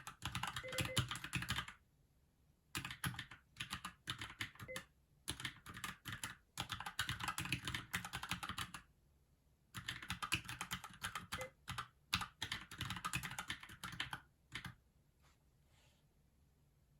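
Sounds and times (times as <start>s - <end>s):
mechanical keyboard typing: 0.0s - 1.8s, 2.8s - 8.8s, 9.8s - 14.8s.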